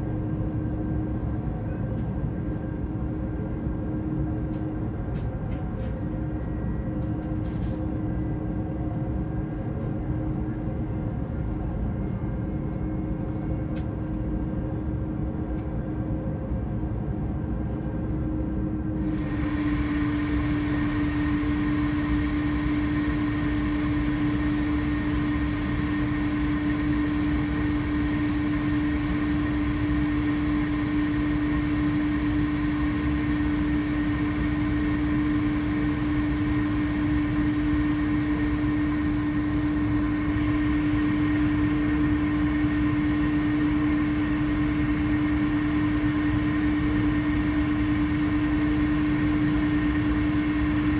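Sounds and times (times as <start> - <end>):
jet engines running: 18.8 - 50.9.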